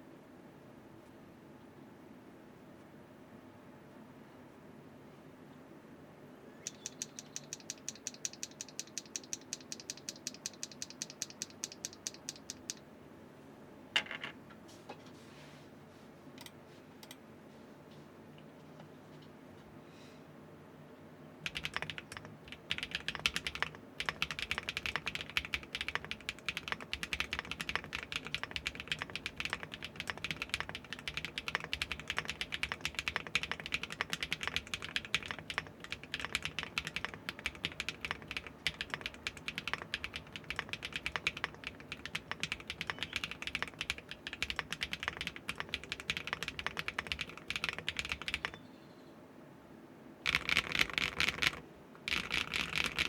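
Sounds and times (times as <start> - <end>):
typing on mechanical keyboard: 6.7 - 12.8, 21.4 - 48.6, 50.3 - 53.0.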